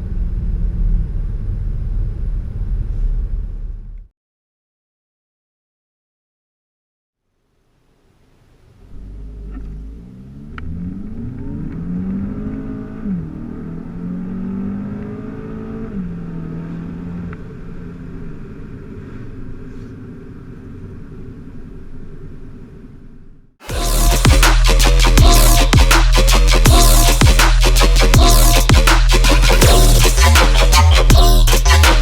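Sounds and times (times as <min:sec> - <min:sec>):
car engine accelerating: 0:08.8 - 0:19.3.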